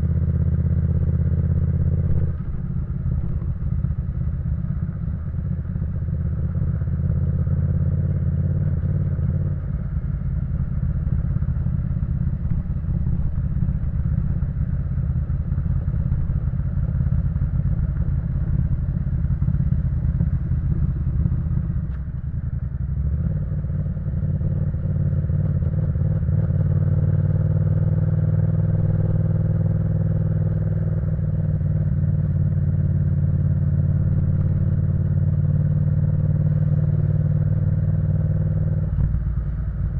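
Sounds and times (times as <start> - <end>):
motorcycle engine while riding: 0.0 - 39.9.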